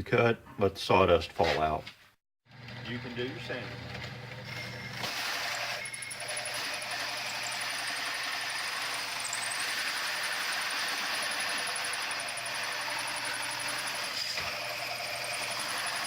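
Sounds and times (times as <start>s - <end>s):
power drill boring through wood: 4.6s - 16.0s.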